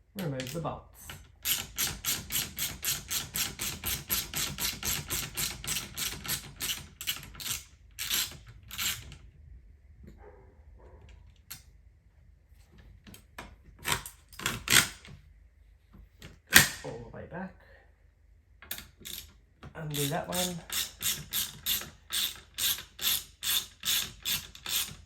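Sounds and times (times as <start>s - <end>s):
socket ratchet clicking: 0.2s - 9.1s, 18.6s - 19.3s, 19.9s - 25.0s.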